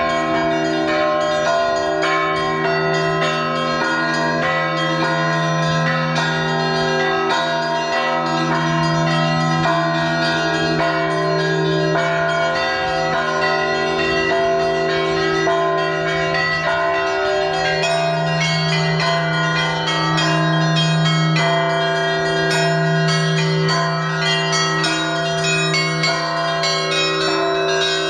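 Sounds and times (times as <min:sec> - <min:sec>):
large bell humming: 0:00.0 - 0:28.0
small church bells pealing: 0:00.0 - 0:28.0.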